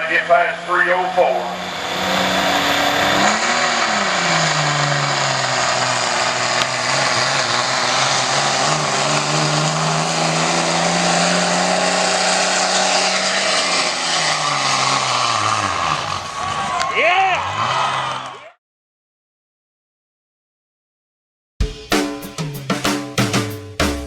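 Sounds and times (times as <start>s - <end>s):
diesel truck engine at high revs: 0.0s - 18.5s.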